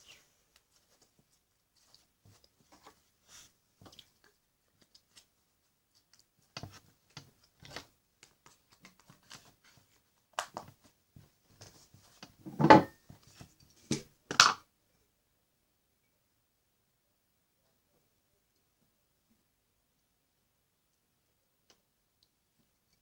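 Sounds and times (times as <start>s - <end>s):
slime squelches: 0.0s - 10.9s.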